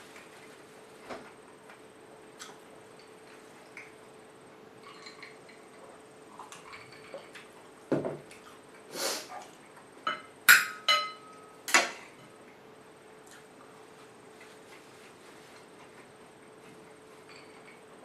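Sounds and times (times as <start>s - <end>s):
crockery clinking on a table: 10.1s - 12.3s.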